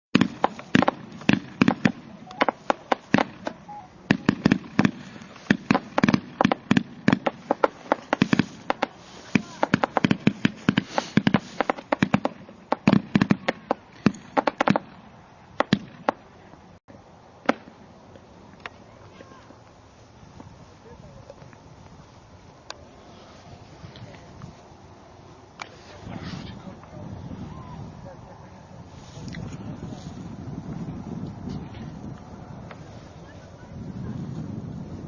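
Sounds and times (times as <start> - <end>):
fireworks pops and bangs: 0.1 - 16.3, 17.4 - 20.6
fireworks crackling hiss: 0.2 - 35.0.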